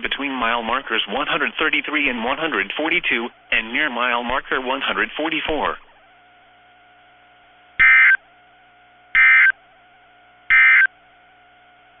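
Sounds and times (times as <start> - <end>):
harsh two-tone digital squawks: 7.8 - 8.2, 9.1 - 9.6, 10.5 - 10.9.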